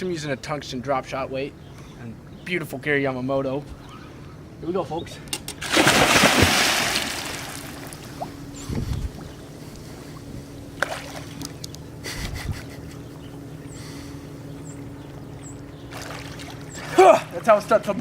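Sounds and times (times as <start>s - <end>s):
boat motor idling: 7.3s - 18.0s.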